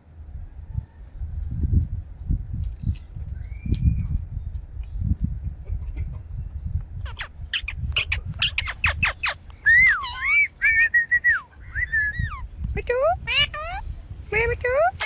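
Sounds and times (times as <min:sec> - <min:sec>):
parakeet squawking: 0:07.0 - 0:10.9, 0:13.2 - 0:13.8.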